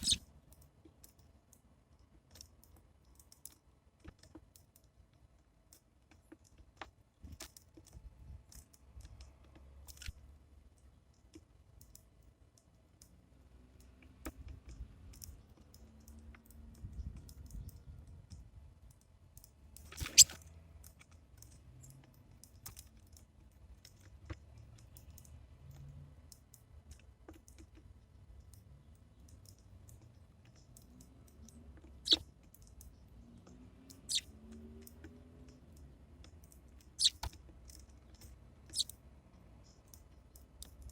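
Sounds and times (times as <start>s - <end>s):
beaks pecking seed: 0.0s - 0.2s, 19.9s - 20.4s, 31.9s - 32.3s, 33.7s - 35.0s, 36.8s - 37.4s, 38.6s - 39.0s.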